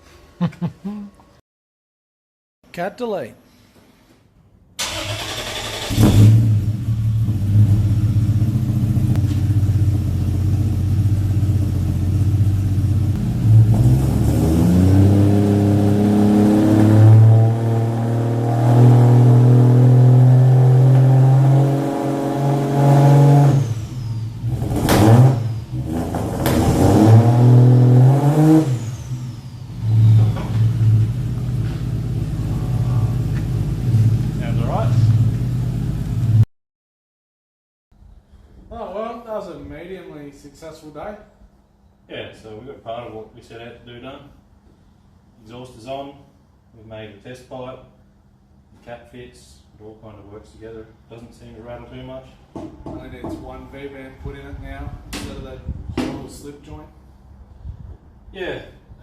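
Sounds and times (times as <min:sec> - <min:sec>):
engine throttle blips: 0:04.8 - 0:36.4
car engine idling and revving: 0:05.0 - 0:36.4.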